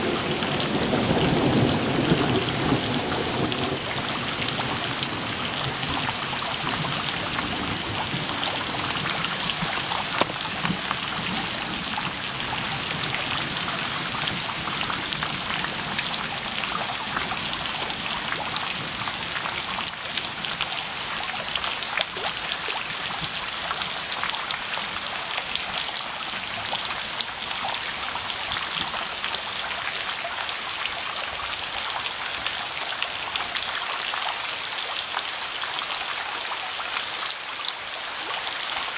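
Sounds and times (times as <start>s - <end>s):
raindrops landing close by: 0.0s - 20.8s
rain falling: 0.0s - 38.9s.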